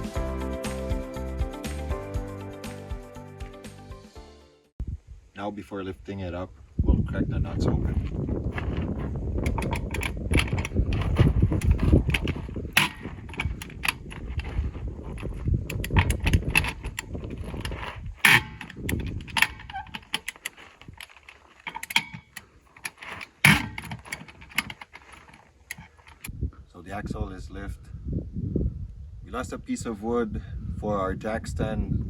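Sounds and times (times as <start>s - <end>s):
ratchet and wrench clicking: 9.4s - 26.3s.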